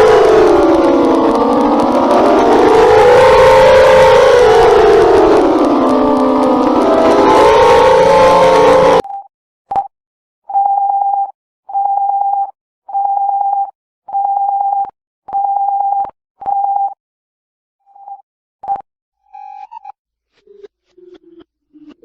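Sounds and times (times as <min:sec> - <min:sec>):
loud electronic beeps: 0:00.0 - 0:09.0
loud siren: 0:00.0 - 0:09.0.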